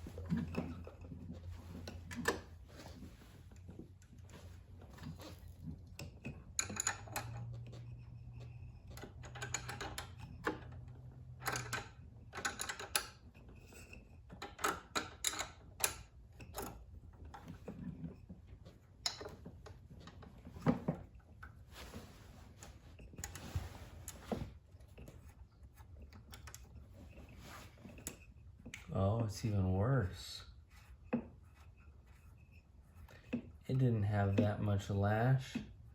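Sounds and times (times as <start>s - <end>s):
tools tapping on metal: 5.9s - 10.8s, 13.7s - 16.8s.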